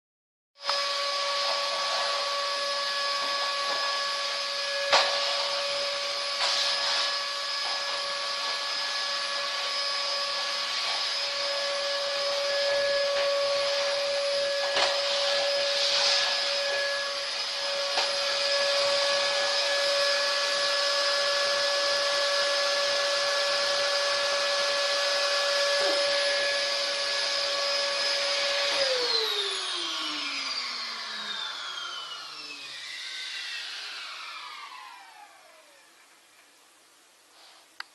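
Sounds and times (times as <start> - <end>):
vacuum cleaner running: 0.6 - 37.7.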